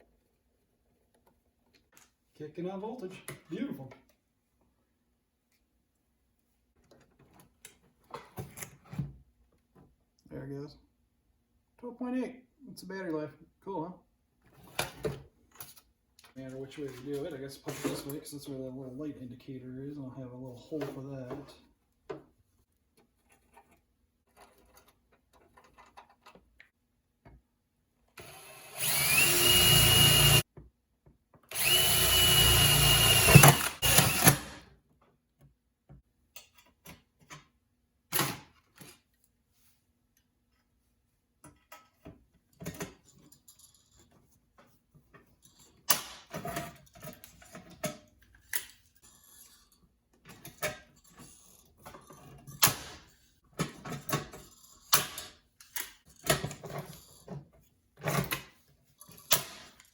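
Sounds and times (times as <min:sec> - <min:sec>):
electric drill whining: 0:28.2 - 0:30.4, 0:31.5 - 0:34.6.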